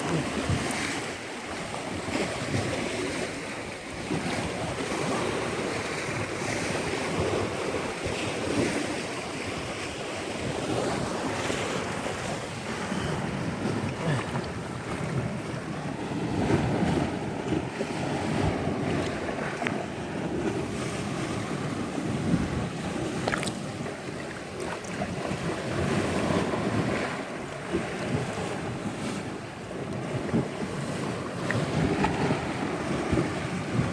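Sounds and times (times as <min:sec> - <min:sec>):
sea waves washing on shore: 0:00.0 - 0:33.9
wind buffeting microphone: 0:00.0 - 0:33.9.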